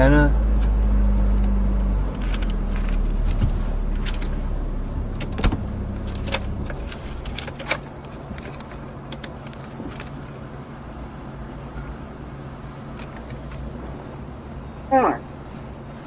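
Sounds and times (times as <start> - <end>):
low steady rumble: 0.0 - 16.0
sharp clicks and knocks: 5.1 - 10.2.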